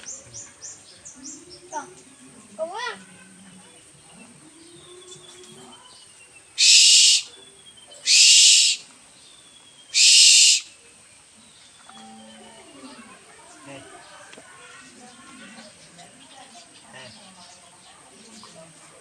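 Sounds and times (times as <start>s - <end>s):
owl screeching: 6.6s - 7.4s, 8.0s - 8.9s, 9.9s - 10.8s.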